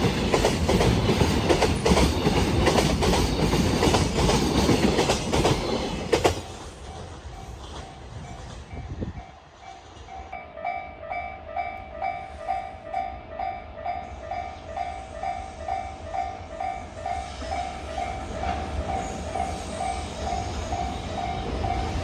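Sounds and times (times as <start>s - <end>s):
freight train rumble: 0.0s - 22.0s
level crossing warning bell: 9.7s - 22.0s
lower bell tone: 10.3s - 16.8s.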